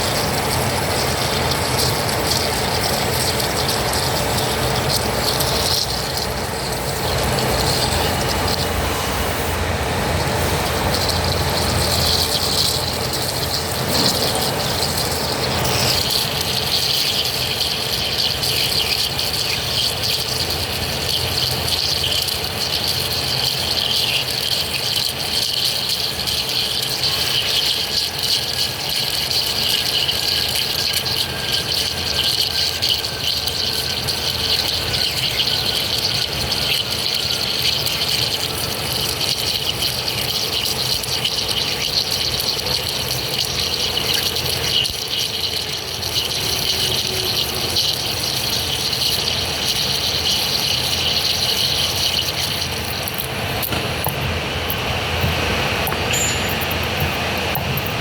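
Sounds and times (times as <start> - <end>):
metal lathe running: 0.0 - 58.0
hiss of lathe cutting steel: 6.7 - 12.6.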